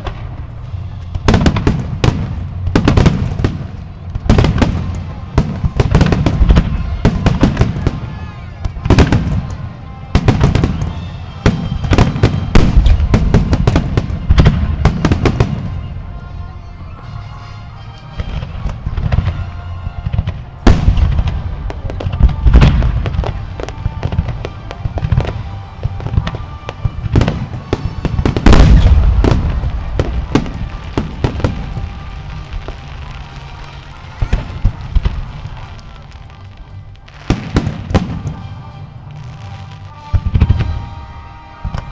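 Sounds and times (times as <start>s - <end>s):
fireworks bangs and crackles: 0.0s - 41.9s.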